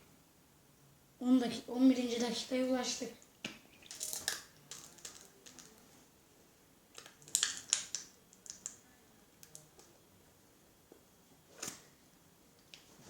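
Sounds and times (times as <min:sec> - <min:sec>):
plastic bottle crackling: 0:03.4 - 0:05.8, 0:07.0 - 0:08.8.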